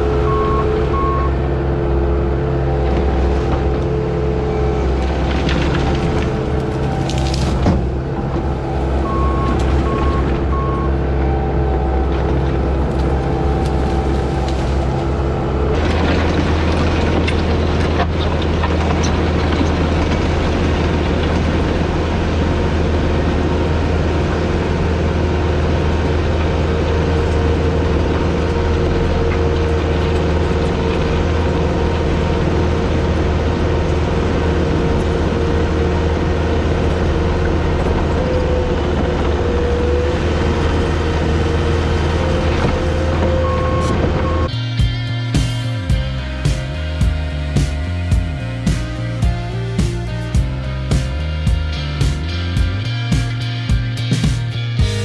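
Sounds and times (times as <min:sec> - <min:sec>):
short beeps: 0:00.0 - 0:01.5, 0:08.6 - 0:12.1, 0:43.3 - 0:44.6
diesel engine running: 0:00.0 - 0:55.0.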